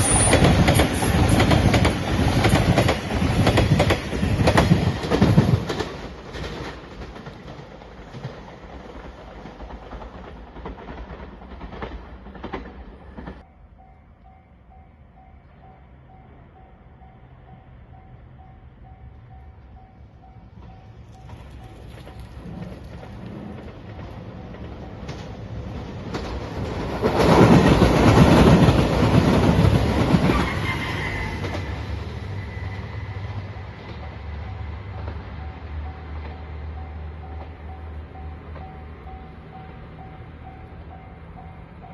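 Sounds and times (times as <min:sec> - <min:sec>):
railway crossing alarm dinging: 0:00.0 - 0:05.5, 0:13.4 - 0:22.7, 0:23.3 - 0:26.3, 0:26.9 - 0:41.9
train wheels clacking over rails: 0:00.0 - 0:13.4, 0:20.6 - 0:40.1.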